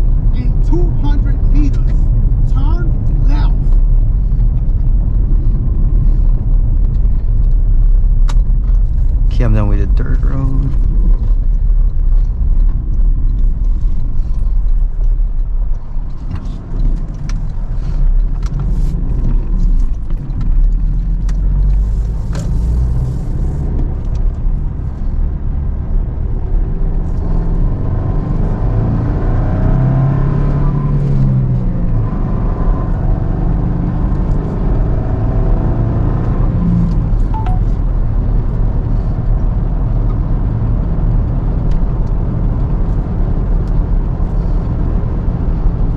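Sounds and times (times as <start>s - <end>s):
truck engine and road rumble: 0.0s - 45.9s.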